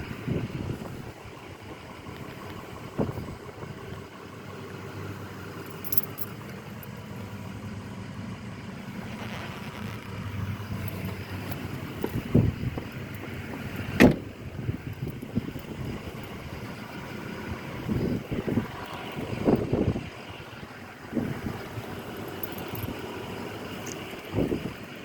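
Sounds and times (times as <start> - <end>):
car engine idling: 0.0 - 25.0
sharp thump: 14.0 - 14.3.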